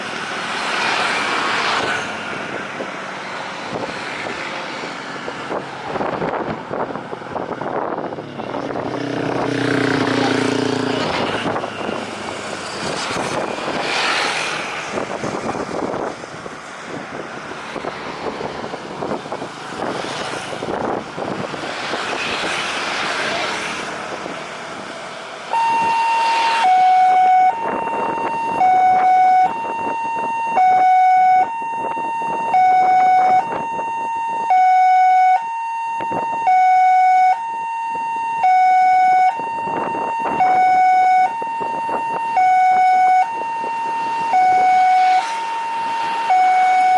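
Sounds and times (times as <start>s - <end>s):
road traffic passing: 0.0s - 46.9s
two-tone siren: 25.5s - 46.9s.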